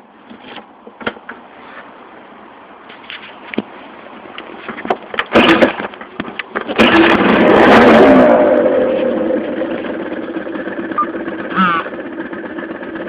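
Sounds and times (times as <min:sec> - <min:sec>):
scooter engine starting and idling: 0:05.2 - 0:13.0.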